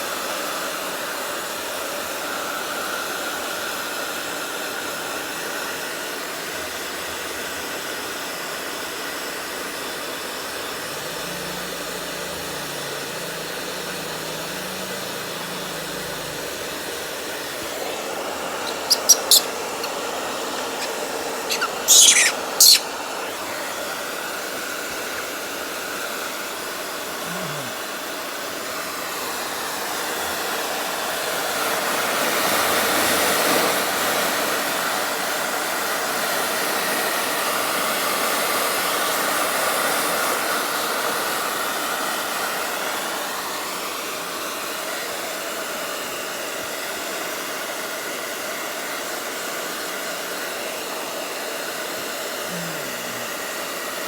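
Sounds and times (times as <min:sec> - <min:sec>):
hair dryer blowing: 0:12.1 - 0:27.0
short shrill high-pitched sounds: 0:21.5 - 0:22.8.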